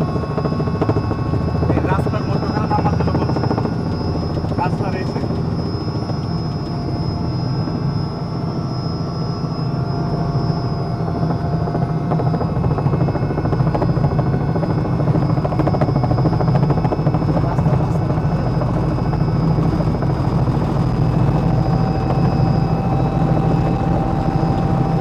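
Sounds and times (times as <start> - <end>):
helicopter rotor beat: 0.0 - 25.0
turbine whine: 0.0 - 25.0.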